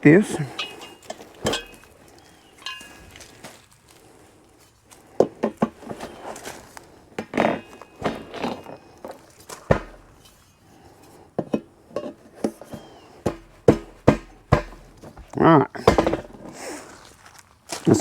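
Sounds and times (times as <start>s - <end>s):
metal parts clinking and knocking: 0.4s - 3.4s
short metal rattle: 0.4s - 3.4s
dull thump: 9.6s - 10.3s, 13.2s - 16.5s.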